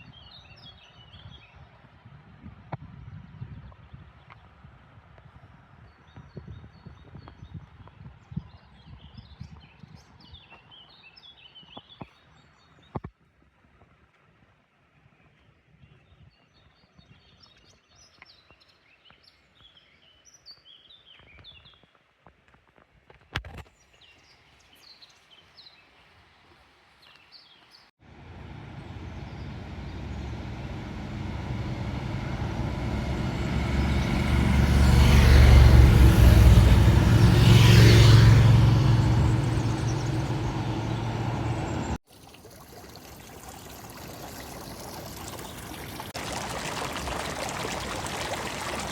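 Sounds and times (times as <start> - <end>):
stream running water: 24.2 - 48.9
motor vehicle passing by: 28.0 - 42.0.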